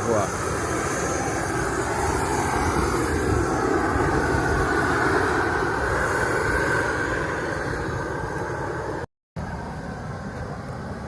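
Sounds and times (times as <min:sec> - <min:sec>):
gas torch rushing: 0:00.0 - 0:09.1.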